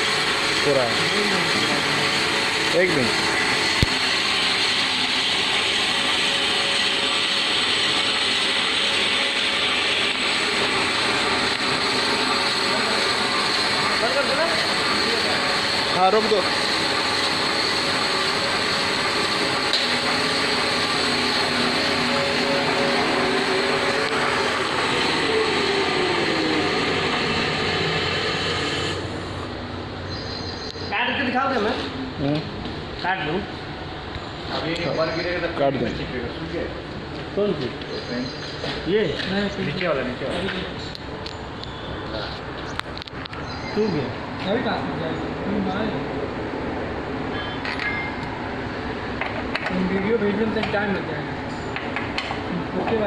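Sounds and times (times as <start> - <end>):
band saw whirring: 0.0 - 30.1.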